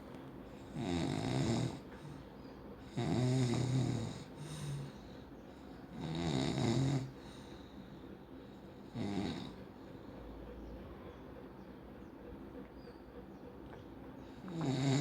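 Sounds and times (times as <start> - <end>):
person snoring: 14.4 - 15.0.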